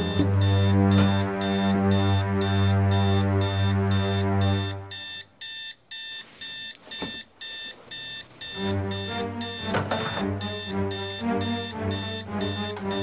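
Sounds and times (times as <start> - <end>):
low sustained music: 0.0 - 4.6
alarm clock beeping: 0.0 - 13.0.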